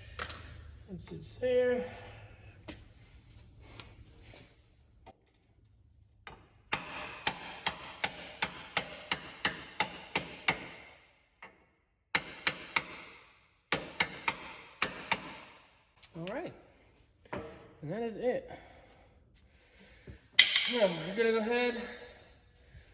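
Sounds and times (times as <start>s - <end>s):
hammer striking metal socket: 20.4s - 20.9s.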